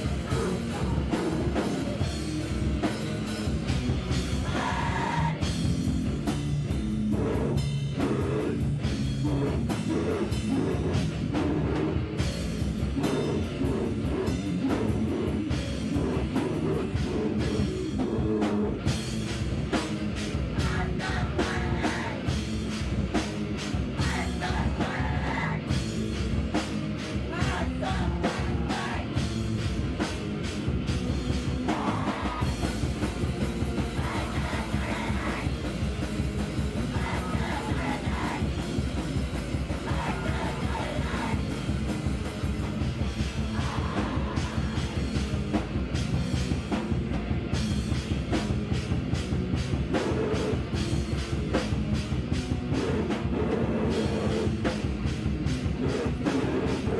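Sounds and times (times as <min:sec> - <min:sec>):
live heavy rock band: 0:00.0 - 0:56.9
singing: 0:04.4 - 0:05.4, 0:20.6 - 0:22.3, 0:24.0 - 0:25.7, 0:27.3 - 0:29.2, 0:33.8 - 0:35.6, 0:36.9 - 0:38.6, 0:39.8 - 0:41.6, 0:43.5 - 0:45.1.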